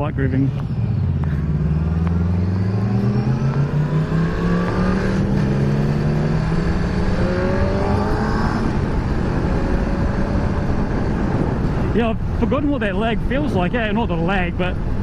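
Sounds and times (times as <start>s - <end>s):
motorcycle engine accelerating: 0.0s - 13.4s
wind on microphone: 0.0s - 15.0s.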